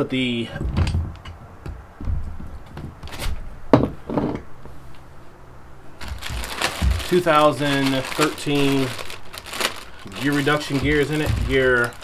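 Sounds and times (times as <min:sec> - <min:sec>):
engine parts knocking on workbench: 0:00.6 - 0:03.1, 0:03.7 - 0:04.5, 0:10.7 - 0:12.0
rustling: 0:06.0 - 0:12.0.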